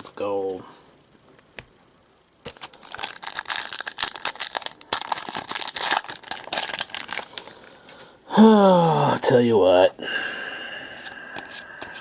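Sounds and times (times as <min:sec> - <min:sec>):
card pack wrapper tearing and crinkling: 0:02.5 - 0:07.7.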